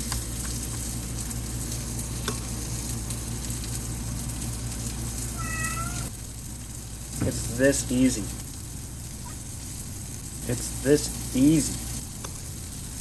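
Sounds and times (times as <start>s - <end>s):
patties sizzling in a frying pan: 0.0s - 13.0s
cat meowing: 5.3s - 6.1s.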